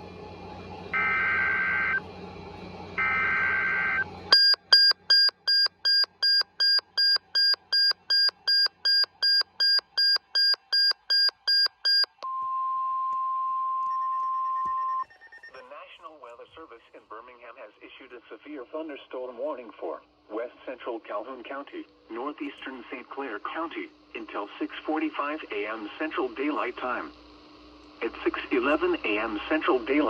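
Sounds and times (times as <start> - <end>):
steady warning alarm tone: 0.8 - 2.1, 2.9 - 12.2
rapid electronic beeping: 3.0 - 12.2.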